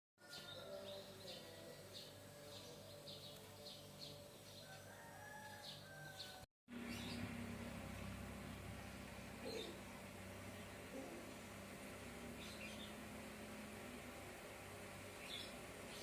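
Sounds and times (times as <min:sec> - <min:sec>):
low steady hum: 0:06.7 - 0:16.0.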